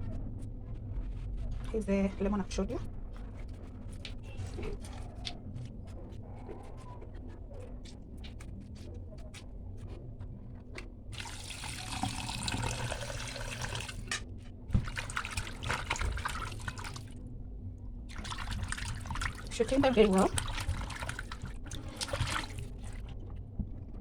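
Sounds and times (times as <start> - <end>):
water running and splashing: 11.2 - 17.2, 18.1 - 23.2.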